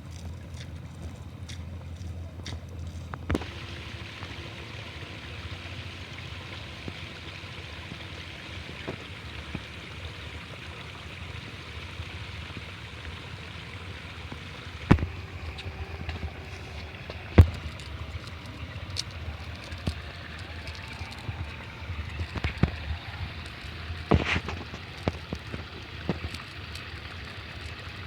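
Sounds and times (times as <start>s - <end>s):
water pattering and running: 0.0s - 28.0s.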